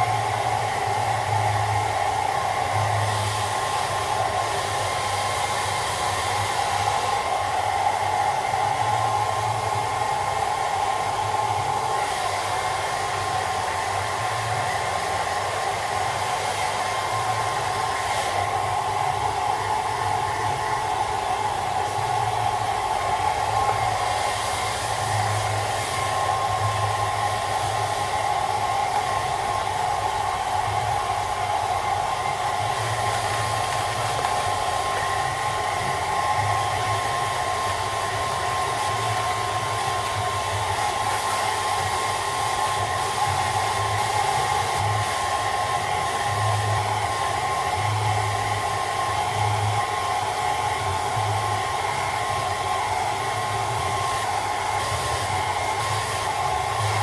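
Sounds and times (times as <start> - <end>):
hairdryer running: 0.0 - 57.0.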